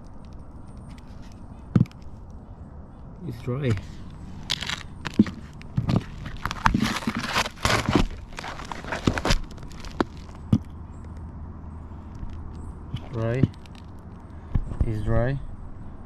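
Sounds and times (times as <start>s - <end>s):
scuffing and crinkling on roof: 3.6s - 10.8s.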